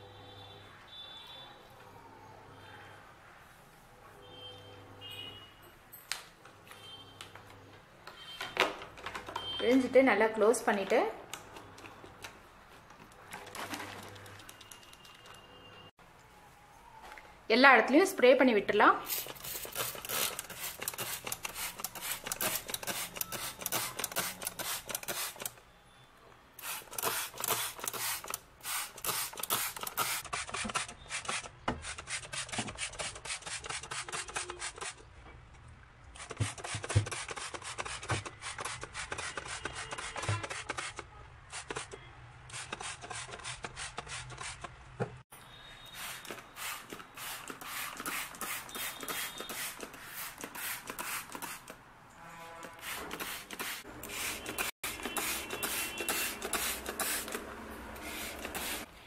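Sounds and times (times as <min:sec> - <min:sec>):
spray bottle spritzing: 0:19.0 - 0:25.6, 0:26.6 - 0:35.0, 0:36.2 - 0:41.9, 0:45.9 - 0:51.8, 0:52.7 - 0:57.4, 0:58.0 - 0:58.9.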